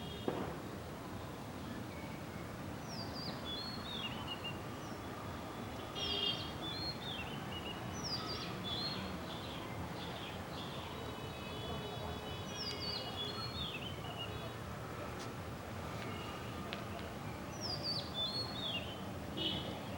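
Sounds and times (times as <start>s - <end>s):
outdoor background hiss: 0.0s - 19.9s.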